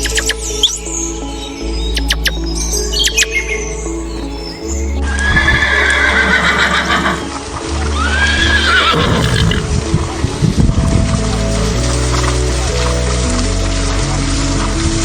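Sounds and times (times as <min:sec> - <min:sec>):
background music: 0:00.0 - 0:15.0
horse whinnying: 0:05.1 - 0:07.4, 0:08.0 - 0:09.7.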